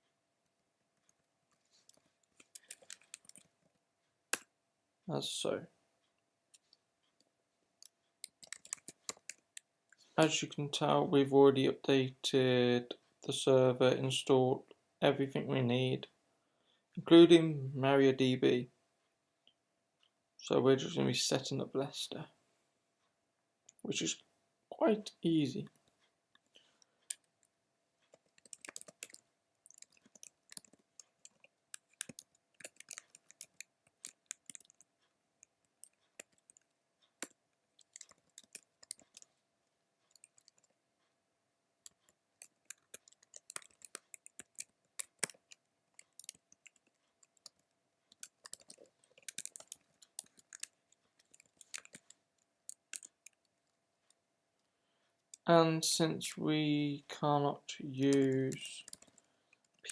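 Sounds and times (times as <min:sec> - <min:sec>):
keyboard typing clicks: 0:01.9 - 0:03.5, 0:07.8 - 0:09.7, 0:28.1 - 0:34.9, 0:35.8 - 0:39.3, 0:41.8 - 0:53.5, 0:58.2 - 0:59.9.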